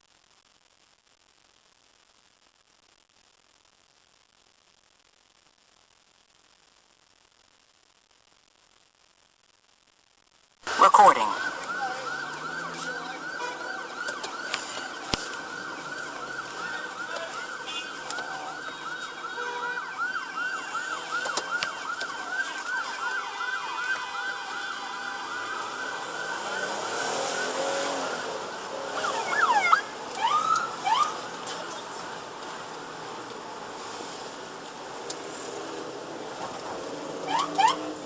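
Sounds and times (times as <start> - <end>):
police siren yelping: 10.7 - 33.7, 36.2 - 38.0.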